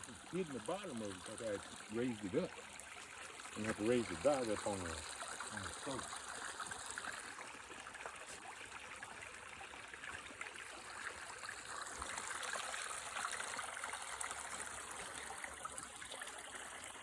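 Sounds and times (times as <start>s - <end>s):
shallow water trickling: 0.0s - 17.0s.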